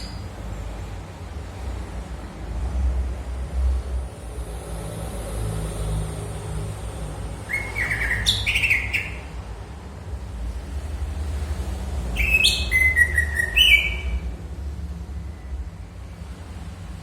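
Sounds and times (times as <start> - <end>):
birds chirping: 0.0 - 0.5, 7.4 - 9.5, 12.1 - 14.3.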